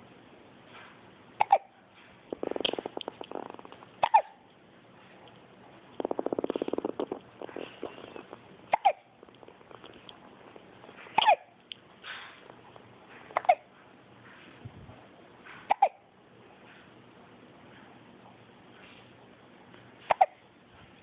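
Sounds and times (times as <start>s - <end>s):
baby hiccuping: 1.4s - 1.7s, 2.4s - 4.4s, 6.0s - 11.6s, 13.3s - 13.7s, 15.6s - 16.0s, 20.1s - 20.4s.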